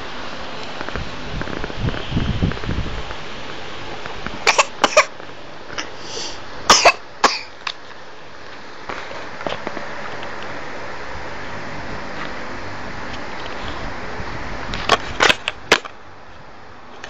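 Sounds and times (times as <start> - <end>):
person coughing: 4.5 - 5.1, 6.7 - 7.6.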